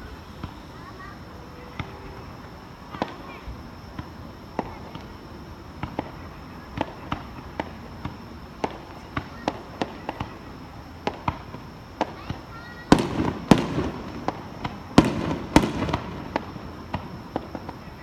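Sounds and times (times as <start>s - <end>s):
fireworks popping and banging: 5.8s - 18.0s.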